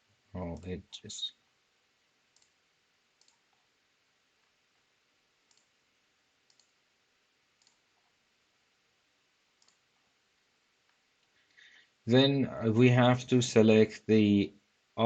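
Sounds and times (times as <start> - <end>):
computer mouse clicks: 0.6 - 0.8, 2.3 - 2.6, 3.2 - 3.7, 5.4 - 5.8, 6.4 - 6.8, 7.6 - 8.1, 9.6 - 9.9.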